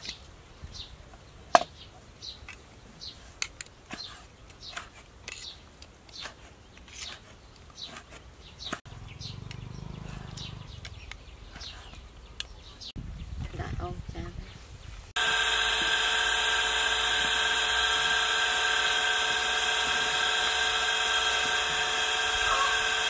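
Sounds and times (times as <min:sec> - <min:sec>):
small birds chirping: 0:00.0 - 0:15.2
low hum: 0:15.2 - 0:23.0.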